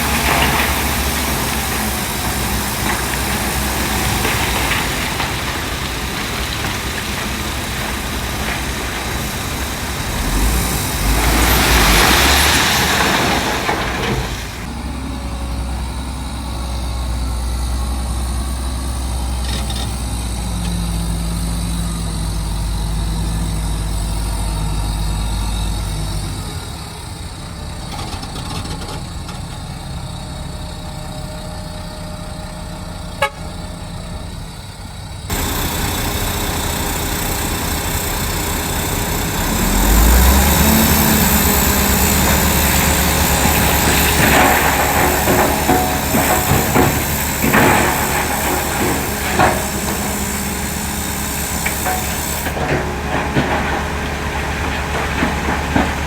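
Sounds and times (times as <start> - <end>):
heavy diesel engines droning: 0.0 - 56.0.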